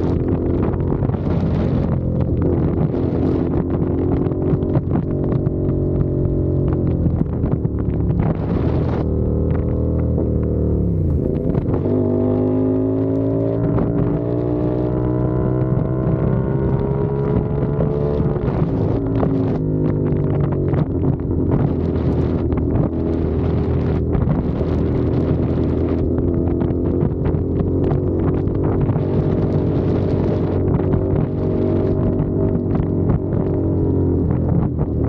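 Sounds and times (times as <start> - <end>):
motorcycle engine revving: 0.0 - 35.0
wind buffeting microphone: 0.0 - 35.0.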